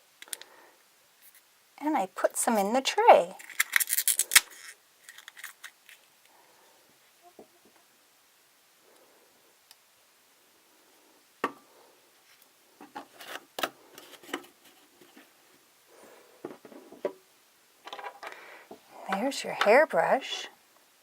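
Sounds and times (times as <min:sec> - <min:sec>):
plastic toy parts clicking: 0:03.4 - 0:05.8.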